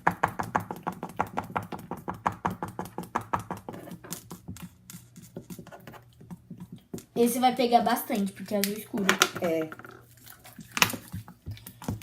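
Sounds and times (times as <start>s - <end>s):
marker tapping on hard surface: 0.0s - 7.1s.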